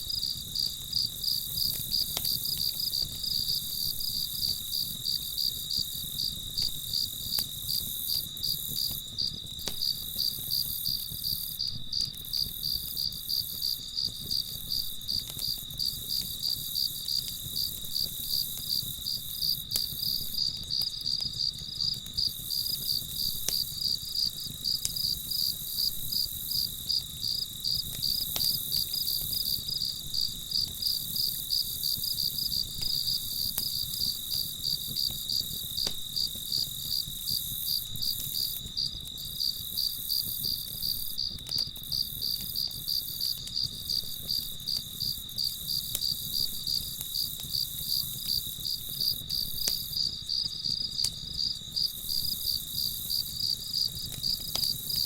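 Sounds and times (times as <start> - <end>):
campfire crackling: 0.0 - 55.0
crickets chirping: 0.0 - 55.0.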